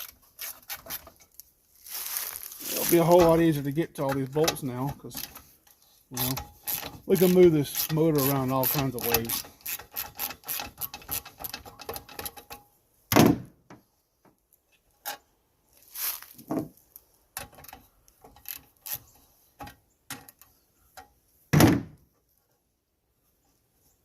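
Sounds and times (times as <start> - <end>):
tools and metal parts clunking: 2.7 - 12.7, 17.3 - 21.2
socket ratchet clicking: 6.2 - 12.4.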